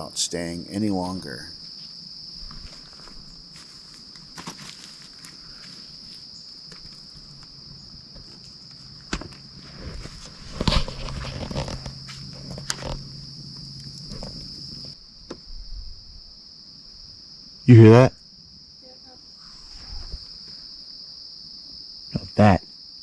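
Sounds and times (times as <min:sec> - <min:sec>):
crickets chirring: 0:00.0 - 0:23.0
rustling: 0:01.8 - 0:07.5, 0:08.2 - 0:15.0.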